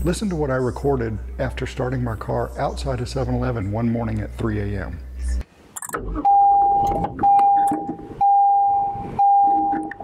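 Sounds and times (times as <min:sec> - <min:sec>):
car warning chime beeping: 0:06.3 - 0:10.0.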